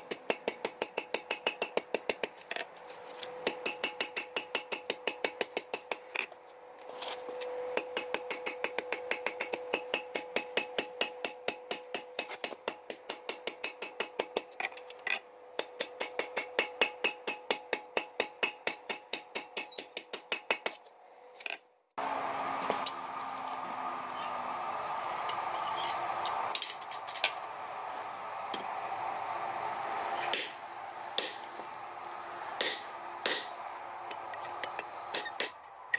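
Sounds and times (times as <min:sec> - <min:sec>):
hammer striking hot steel: 0:00.0 - 0:02.4, 0:03.4 - 0:06.3, 0:07.7 - 0:14.7, 0:15.6 - 0:20.8, 0:30.2 - 0:31.7, 0:32.6 - 0:35.6.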